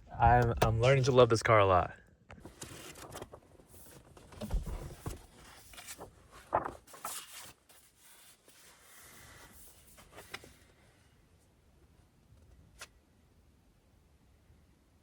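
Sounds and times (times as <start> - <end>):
rustling inside a car: 2.4 - 11.1.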